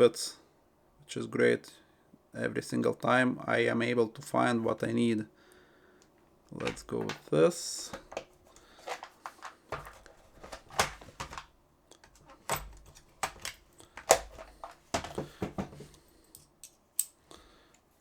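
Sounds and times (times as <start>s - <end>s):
plastic and metal clicks and rattles: 8.0s - 16.4s.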